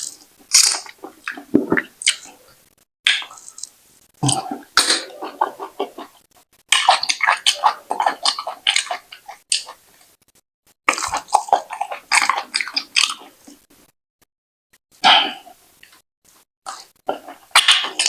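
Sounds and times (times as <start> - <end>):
person chewing wetly: 0.0 - 2.4, 3.1 - 10.1, 10.9 - 13.7, 16.7 - 18.0.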